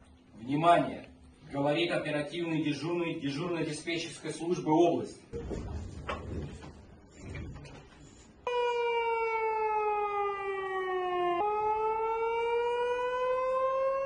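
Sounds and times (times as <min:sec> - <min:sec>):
warning siren: 0:08.4 - 0:14.0.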